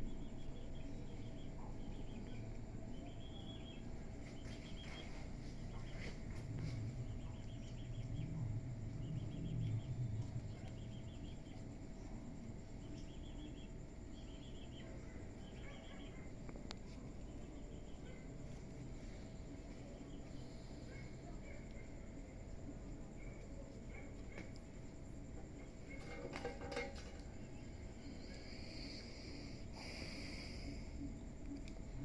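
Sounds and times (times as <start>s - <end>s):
low background rumble: 0.0s - 25.9s
cricket chirping: 0.0s - 32.0s.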